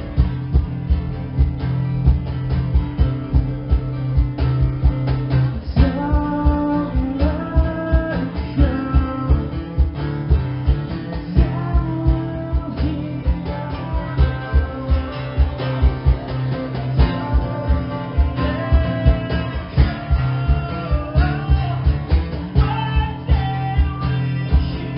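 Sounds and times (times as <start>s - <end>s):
acoustic guitars strummed: 0.0s - 24.9s
steady low beat: 0.0s - 24.9s
person singing: 5.5s - 24.9s.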